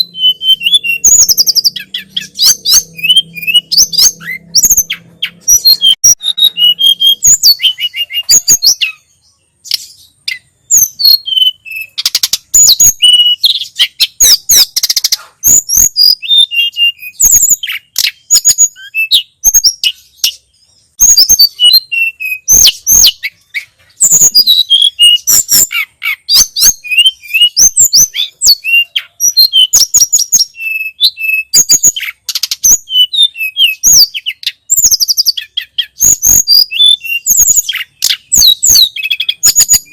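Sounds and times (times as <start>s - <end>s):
bird singing whistled notes: 0.0s - 39.9s.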